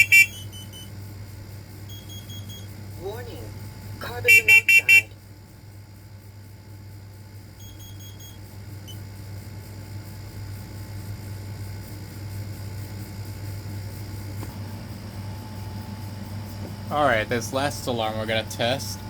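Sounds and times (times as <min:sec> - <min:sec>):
high-pitched alarm beeps: 0:00.0 - 0:01.0, 0:01.9 - 0:02.8, 0:04.2 - 0:05.1, 0:07.6 - 0:09.0
steady low hum: 0:00.0 - 0:19.0.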